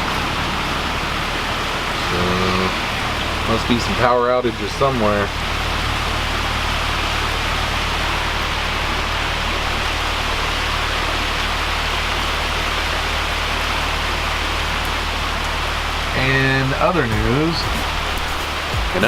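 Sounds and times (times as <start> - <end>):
low hum: 0.0 - 19.0
steady rain falling: 0.0 - 19.0.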